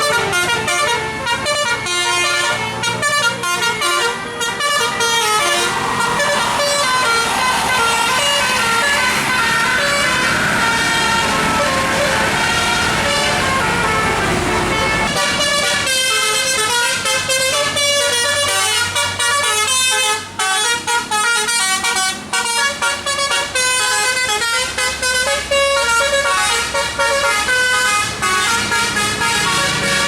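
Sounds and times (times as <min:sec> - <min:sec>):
multi-tone musical bus horn: 0:00.0 - 0:30.0
noisy rush: 0:04.6 - 0:16.0.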